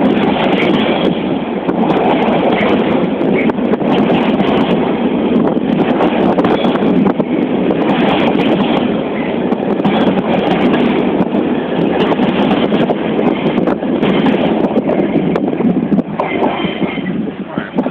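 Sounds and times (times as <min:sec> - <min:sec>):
wheels clicking over rails: 0:00.0 - 0:17.2
diesel locomotive rumbling: 0:00.0 - 0:17.9.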